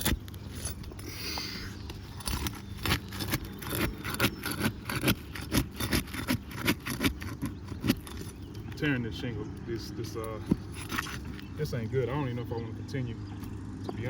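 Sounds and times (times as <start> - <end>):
shingles cracking and scraping: 1.8 - 8.6.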